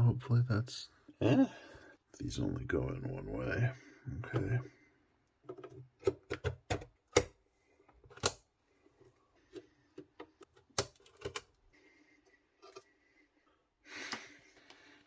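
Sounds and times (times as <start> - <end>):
pc components clicking into place: 8.1 - 8.4.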